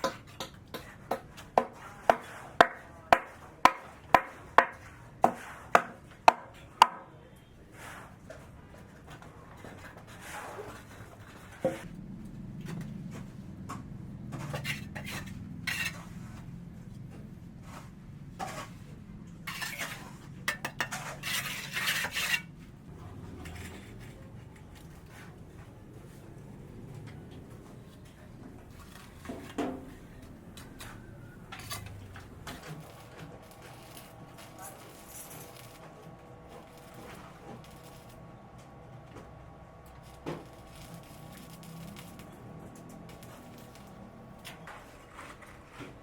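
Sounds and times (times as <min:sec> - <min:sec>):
hard objects scraping and clinking: 0:14.3 - 0:16.4, 0:19.4 - 0:22.6, 0:30.7 - 0:38.3, 0:39.9 - 0:46.0.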